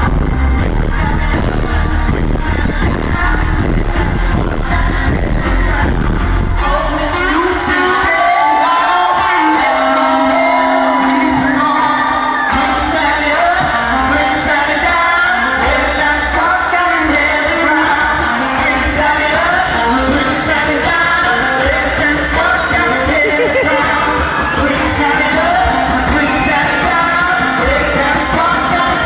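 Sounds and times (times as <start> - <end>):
kick drum and hi-hat beat: 0.0 - 6.7
live concert music with singer: 0.0 - 29.0.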